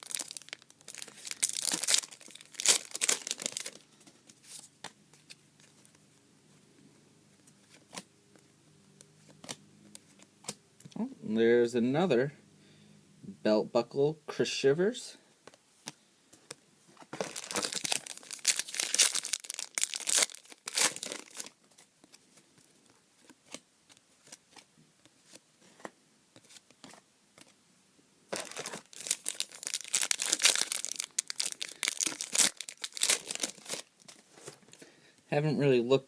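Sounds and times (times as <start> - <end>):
card wrappers tearing and crinkling: 0.0 - 3.8, 17.2 - 22.2, 28.3 - 34.2.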